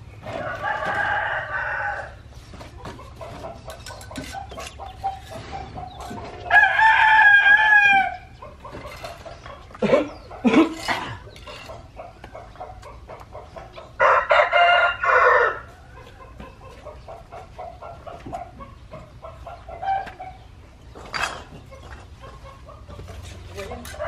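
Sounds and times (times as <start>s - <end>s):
rooster crowing: 0.3s - 2.2s, 6.4s - 8.3s, 14.0s - 15.8s.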